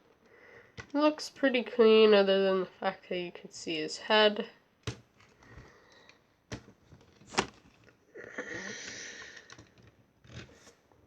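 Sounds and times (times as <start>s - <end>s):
plastic rustling: 5.0s - 8.0s.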